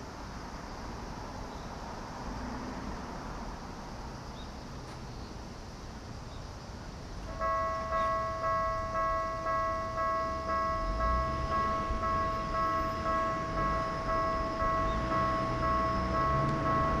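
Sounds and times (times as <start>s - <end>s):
level crossing warning bell: 7.2s - 17.0s.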